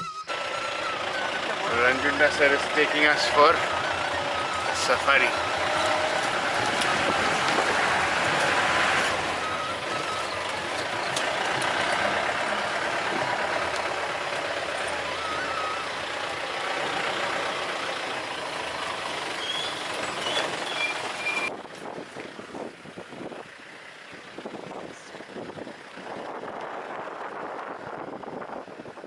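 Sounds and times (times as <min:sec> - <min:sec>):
vehicle engine: 0:00.0 - 0:29.0
road and wind noise: 0:00.3 - 0:29.0.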